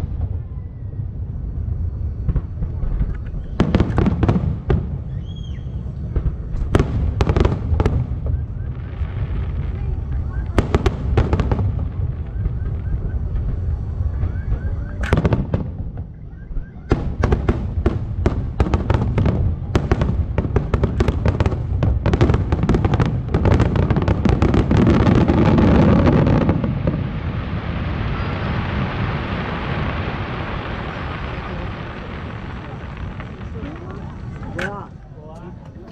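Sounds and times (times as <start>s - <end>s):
fireworks bursting: 0.0s - 35.9s.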